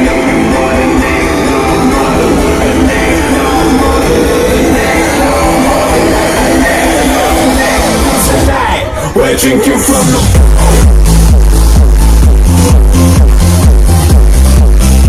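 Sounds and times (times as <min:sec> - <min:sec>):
crowd singing and shouting: 0:00.0 - 0:15.0
party music over sound system: 0:00.0 - 0:15.0.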